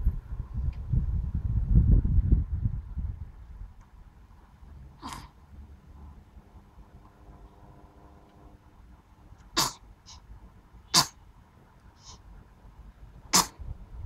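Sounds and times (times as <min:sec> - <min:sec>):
sharp sneezes: 0:05.0 - 0:05.4, 0:09.5 - 0:10.2, 0:10.9 - 0:11.2, 0:13.3 - 0:13.6.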